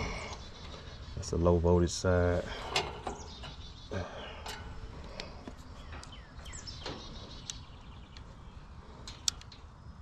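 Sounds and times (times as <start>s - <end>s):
faint birds chirping: 0.0s - 10.0s
light clicks: 9.0s - 9.6s.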